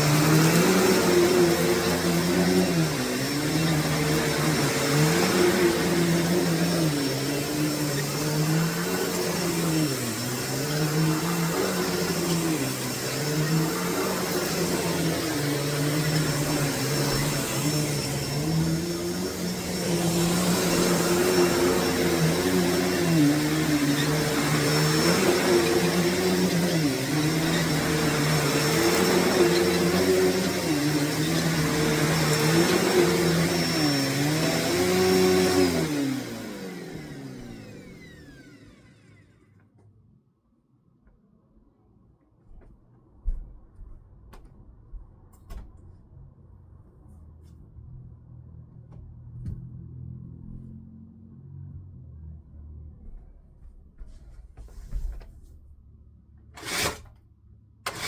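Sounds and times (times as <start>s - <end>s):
vacuum cleaner running over carpet: 0.0s - 39.4s.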